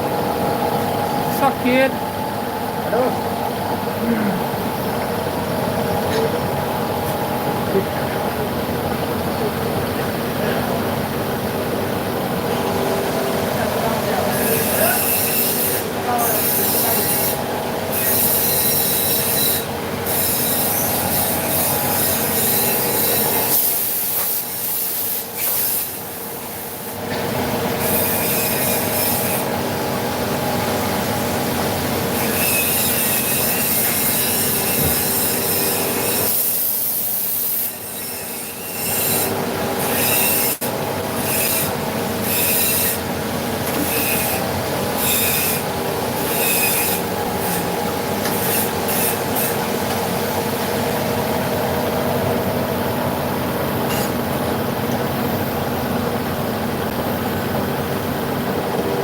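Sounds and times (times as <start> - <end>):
milling machine cutting metal: 12.4 - 26.0, 32.0 - 51.3.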